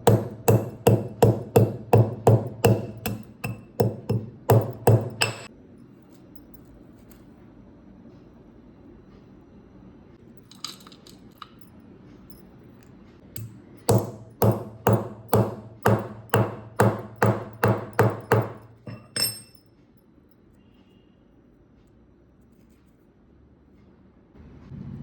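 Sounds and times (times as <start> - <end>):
light metallic clinks: 18.2 - 19.9.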